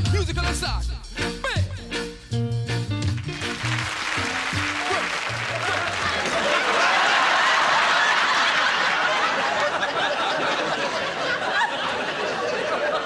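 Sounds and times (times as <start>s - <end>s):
crowd noise: 3.3s - 13.0s
audience laughing: 3.6s - 13.0s.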